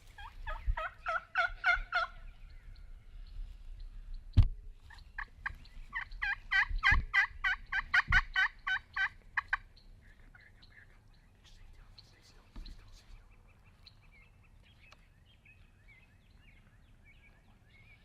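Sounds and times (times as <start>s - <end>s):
turkey yelping: 0.2s - 2.2s, 5.9s - 9.6s.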